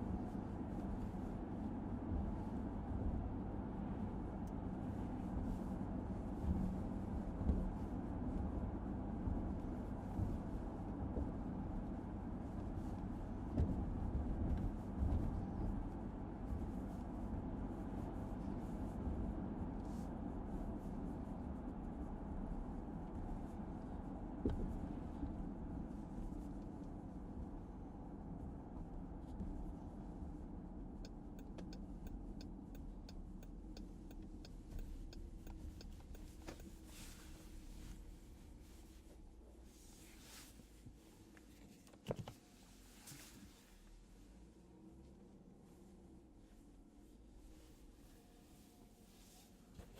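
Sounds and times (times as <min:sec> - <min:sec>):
car engine drone: 0:00.0 - 0:40.1
road rumble: 0:00.0 - 0:49.9
turn signal clicking: 0:31.0 - 0:36.8.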